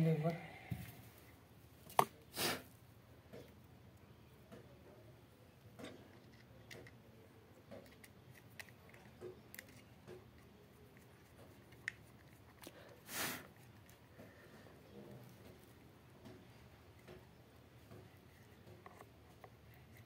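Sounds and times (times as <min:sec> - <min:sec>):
faint clicks of objects handled: 0:05.7 - 0:13.0.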